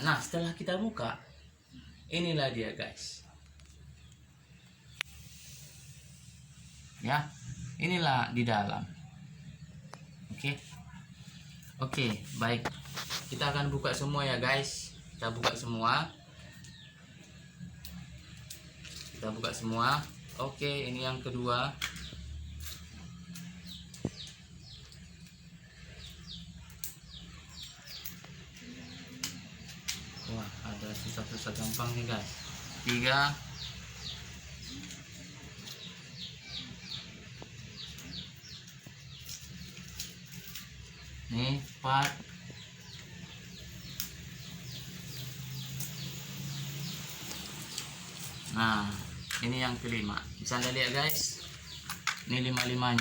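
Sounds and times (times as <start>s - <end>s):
small bird chirping: 0.0s - 53.0s
chicks peeping: 21.9s - 53.0s.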